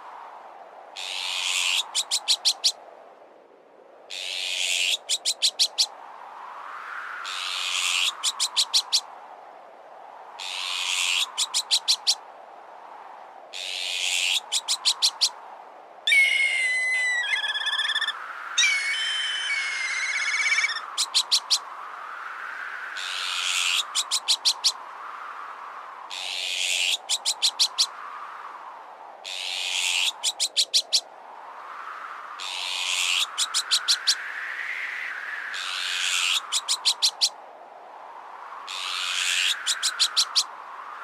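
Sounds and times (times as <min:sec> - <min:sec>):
harsh rasping call: 0:16.1 - 0:20.8
rising and falling whistle tone: 0:16.1 - 0:20.8
whistled bird calls with trills: 0:16.1 - 0:21.6.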